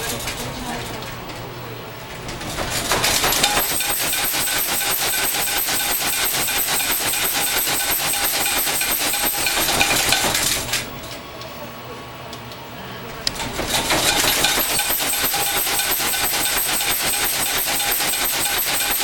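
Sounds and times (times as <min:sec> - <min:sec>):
loud fast rattling and clattering: 0:02.1 - 0:11.0, 0:13.3 - 0:19.0.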